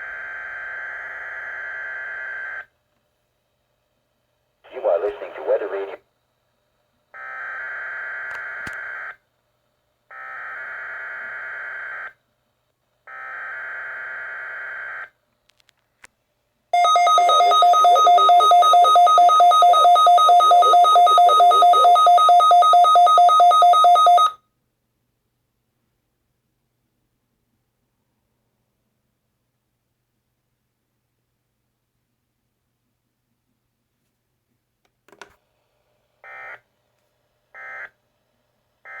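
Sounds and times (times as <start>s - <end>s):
two-tone alert tone pulsing: 16.8s - 24.3s.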